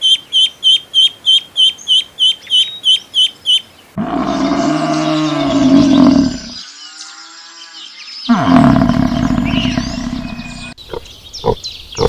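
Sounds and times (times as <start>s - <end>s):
low roaring animal call: 4.0s - 6.6s, 8.3s - 10.8s
pitched animal call: 4.0s - 6.6s, 8.3s - 12.0s
animal grunts: 8.3s - 12.0s.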